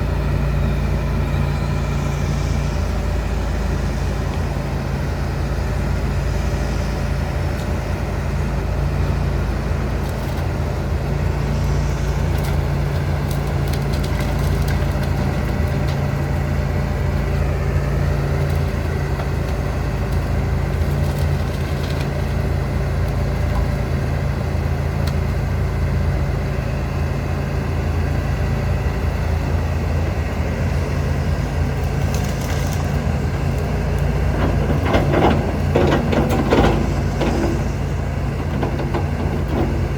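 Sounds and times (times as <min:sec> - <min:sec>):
excavator diesel engine running: 0:00.0 - 0:39.9
branches cracking and crunching: 0:09.9 - 0:10.6, 0:11.6 - 0:23.8, 0:30.6 - 0:35.6.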